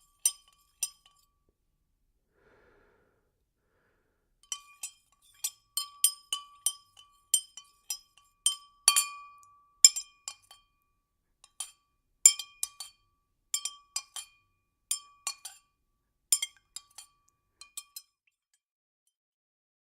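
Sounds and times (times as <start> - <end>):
spoon clinking in a glass: 0.0 - 1.3, 4.4 - 10.8, 11.4 - 15.7, 16.3 - 18.2.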